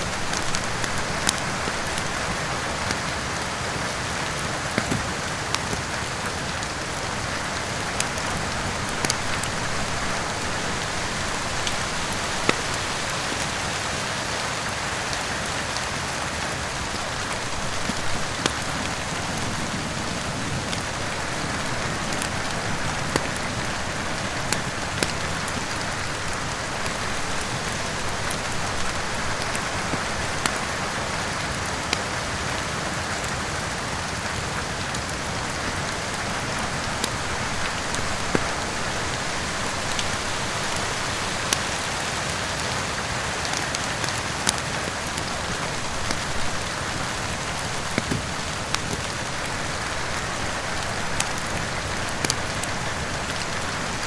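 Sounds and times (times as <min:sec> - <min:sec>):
heavy rain: 0:00.0 - 0:54.0
wood fire crackling and popping: 0:00.0 - 0:54.0.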